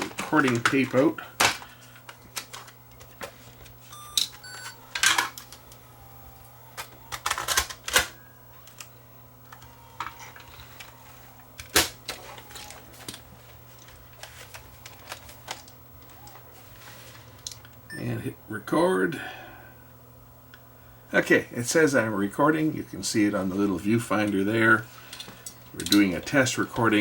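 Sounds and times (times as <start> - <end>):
plastic cassette clicks and clacks: 0.0 - 5.7, 6.7 - 8.9, 13.8 - 16.4
faint steady hum: 0.0 - 27.0.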